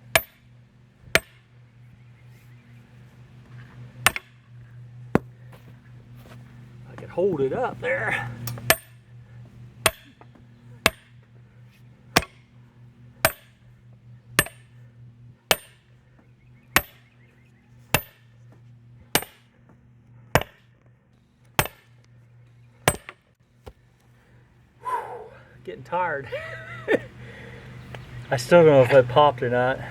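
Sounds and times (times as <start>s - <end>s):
sledgehammer striking metal wedge: 0.1s - 0.5s, 1.1s - 1.5s, 4.0s - 4.5s, 8.6s - 9.0s, 9.8s - 11.2s, 12.2s - 12.4s, 13.2s - 13.6s, 14.4s - 14.7s, 15.5s - 15.8s, 16.8s - 17.0s, 17.9s - 18.3s, 19.1s - 19.5s, 20.3s - 20.7s, 21.6s - 21.9s, 22.8s - 23.2s.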